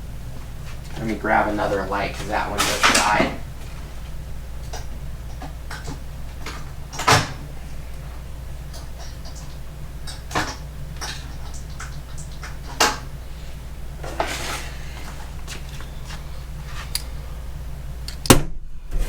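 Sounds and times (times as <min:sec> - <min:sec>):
steady low hum: 0:00.0 - 0:19.0
objects clattering: 0:00.7 - 0:04.1, 0:14.0 - 0:17.1.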